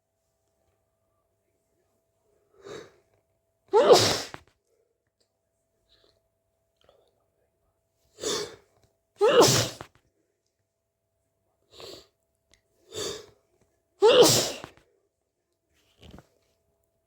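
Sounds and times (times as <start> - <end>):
person sneezing: 3.7 - 4.4, 8.2 - 8.6, 9.2 - 9.9, 12.9 - 13.3, 14.0 - 14.8.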